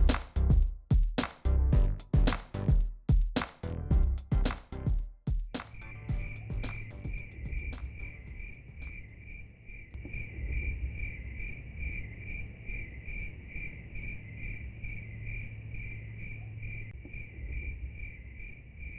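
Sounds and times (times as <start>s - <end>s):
low rumble: 0.0s - 0.6s, 1.5s - 2.8s, 3.7s - 4.9s.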